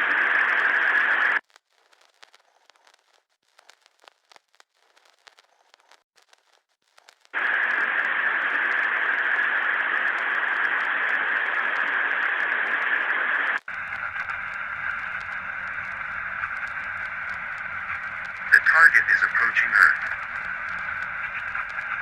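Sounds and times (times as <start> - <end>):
loud static hiss: 0.0 - 22.0
radio static crackles: 0.0 - 22.0
faint steady tones: 7.0 - 22.0.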